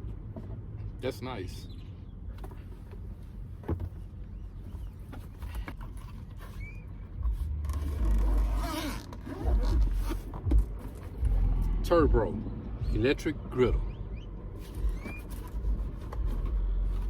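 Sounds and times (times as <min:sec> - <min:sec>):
rough rustling and scraping: 0:02.4 - 0:11.9.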